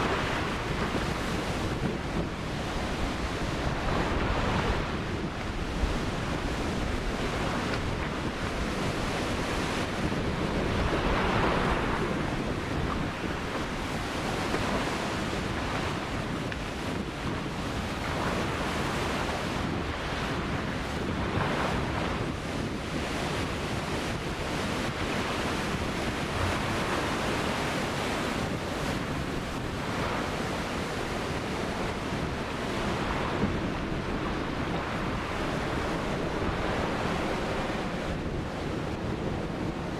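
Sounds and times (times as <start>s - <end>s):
waves breaking on beach: 0.0s - 39.9s
wind buffeting microphone: 0.0s - 39.9s.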